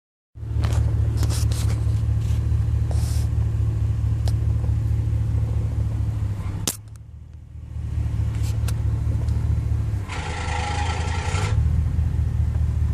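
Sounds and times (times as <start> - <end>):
low drone with sharp ticks: 4.2 - 4.8, 6.6 - 7.5.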